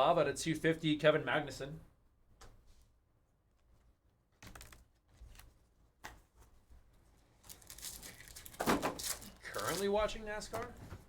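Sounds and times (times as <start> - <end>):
cards and foil wrappers rustling: 7.4 - 10.7.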